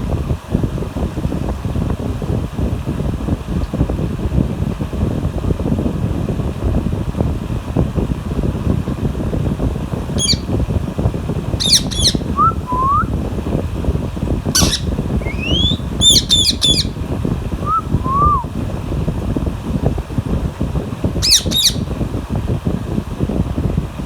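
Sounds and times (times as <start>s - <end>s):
parakeets squawking: 10.1s - 10.6s, 11.6s - 12.8s, 14.5s - 17.0s, 21.2s - 21.9s.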